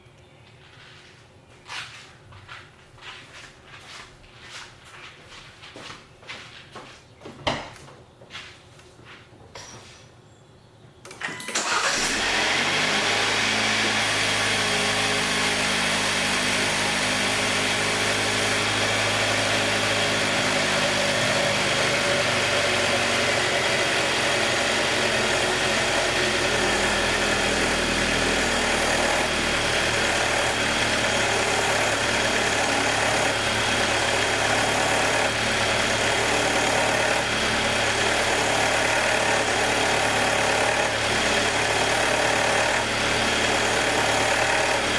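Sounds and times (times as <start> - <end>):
car engine starting and idling: 11.1 - 44.9
engine ticking: 11.6 - 44.9.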